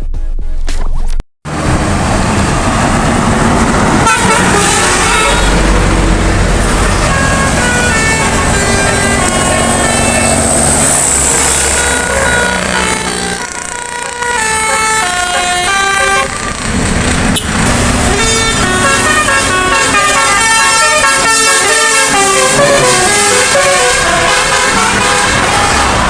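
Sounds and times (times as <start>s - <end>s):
musical air horn tune: 4.0s - 5.9s, 6.6s - 16.4s, 17.4s - 26.0s.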